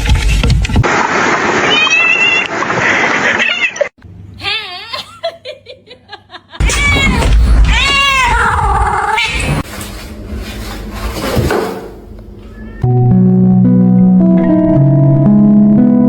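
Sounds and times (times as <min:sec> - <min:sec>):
cat meowing and yowling: 0:06.6 - 0:09.6, 0:12.5 - 0:12.9.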